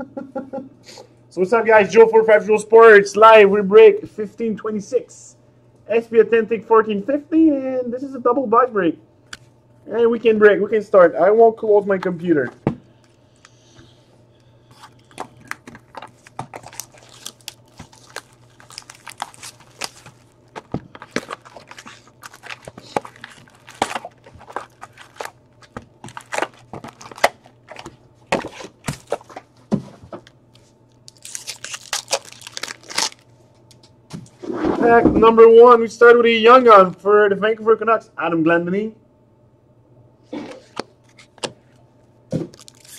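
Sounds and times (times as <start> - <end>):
plastic wrappers crinkling and tearing: 14.7 - 29.5, 30.2 - 33.7, 42.5 - 42.9.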